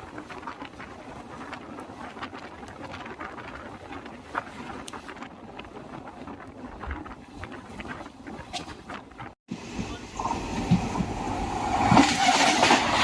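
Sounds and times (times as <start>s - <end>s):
train wind and rumble: 0.0s - 13.0s.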